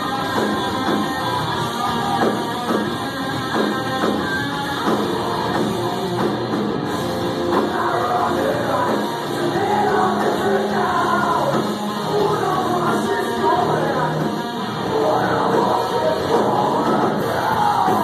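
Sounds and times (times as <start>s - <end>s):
distorted guitars: 0.0s - 18.0s
drums: 0.0s - 18.0s
person singing: 7.6s - 18.0s.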